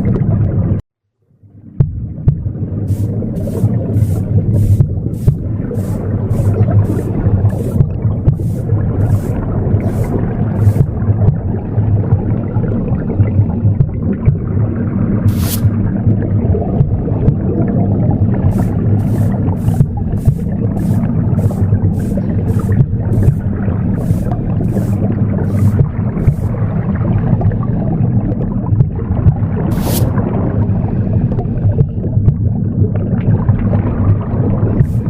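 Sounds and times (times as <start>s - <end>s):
womb whooshing rumble: 1.8s - 12.4s, 18.3s - 27.4s
broom sweeping: 2.9s - 11.0s, 15.3s - 15.8s, 18.5s - 26.6s, 29.7s - 30.2s.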